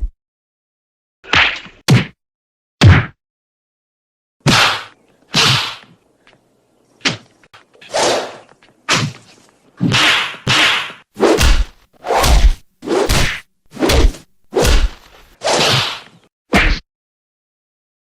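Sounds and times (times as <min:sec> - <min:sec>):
punch swish and hit: 0:04.5 - 0:05.9, 0:09.8 - 0:16.8.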